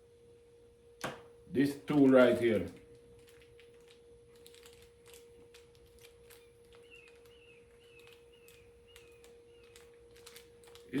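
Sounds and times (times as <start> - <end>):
faint high chirp: 6.7 - 10.0.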